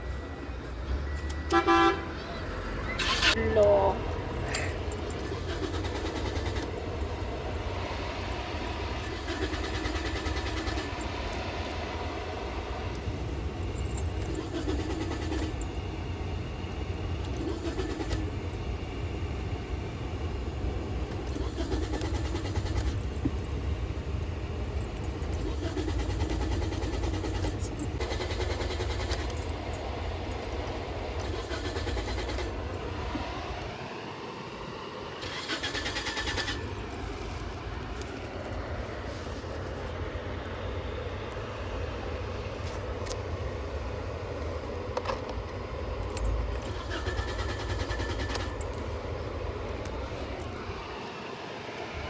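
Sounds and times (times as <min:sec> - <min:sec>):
car engine cranking: 0:02.5 - 0:19.5, 0:20.5 - 0:33.6, 0:35.2 - 0:39.2, 0:45.0 - 0:50.8.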